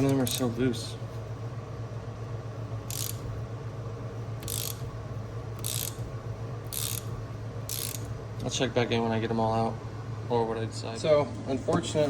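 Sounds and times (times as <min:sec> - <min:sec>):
socket ratchet clicking: 0:00.0 - 0:00.5, 0:02.9 - 0:03.2, 0:04.4 - 0:04.9, 0:05.6 - 0:06.0, 0:06.6 - 0:07.1, 0:07.7 - 0:08.1
steady low hum: 0:00.0 - 0:12.0.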